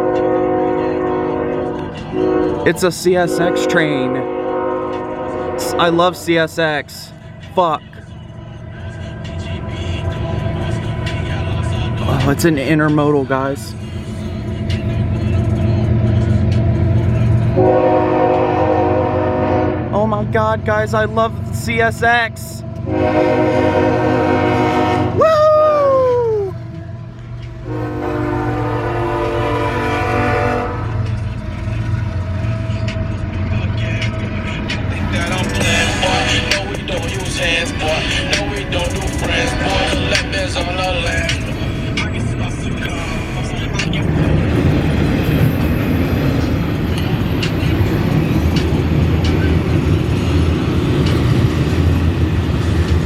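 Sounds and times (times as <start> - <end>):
locomotive horn blast: 0.0 - 6.4, 17.4 - 20.1, 22.8 - 25.2, 27.6 - 31.3
low rumble of train: 0.0 - 53.0
light train clacks: 31.0 - 53.0.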